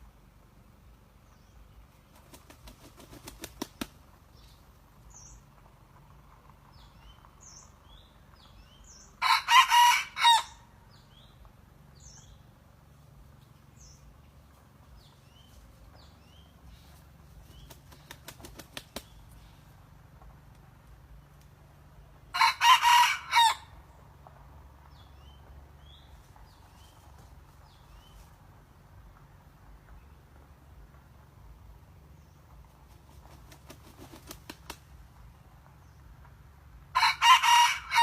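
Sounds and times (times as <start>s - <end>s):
rooster wings flapping: 2.0s - 4.1s, 17.3s - 19.3s, 32.8s - 35.0s
rooster crowing: 9.2s - 10.6s, 22.3s - 23.7s, 37.0s - 38.0s.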